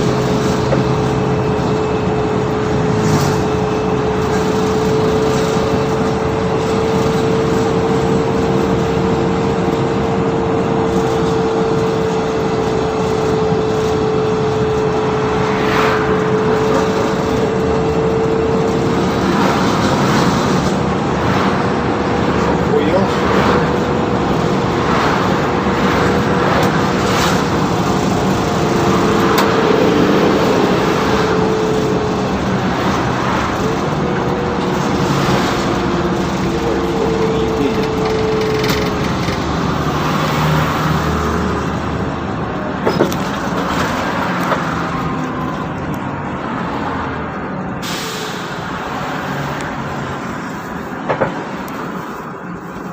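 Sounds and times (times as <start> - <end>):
bus engine and road noise: 0.0 - 52.9.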